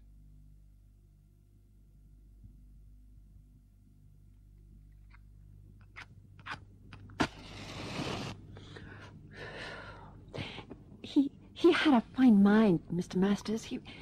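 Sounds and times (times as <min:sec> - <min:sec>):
rushing scraping noise: 0:07.2 - 0:08.4.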